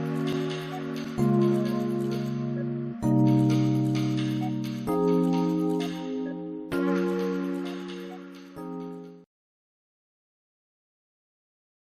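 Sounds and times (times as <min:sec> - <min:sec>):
background music chord: 0:00.0 - 0:09.3.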